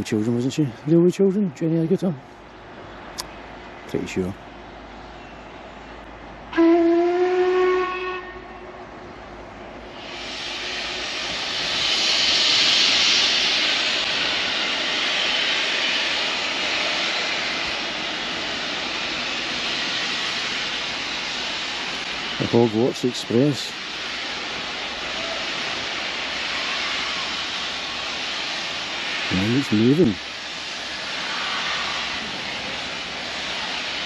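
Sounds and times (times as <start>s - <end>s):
steam locomotive whistle: 6.5s - 8.7s, 26.5s - 27.4s
steam hissing: 9.0s - 34.0s.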